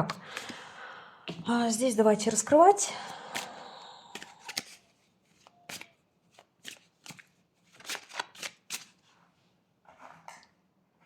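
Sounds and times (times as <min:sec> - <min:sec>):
cards shuffling: 0:00.2 - 0:00.6, 0:04.1 - 0:09.0.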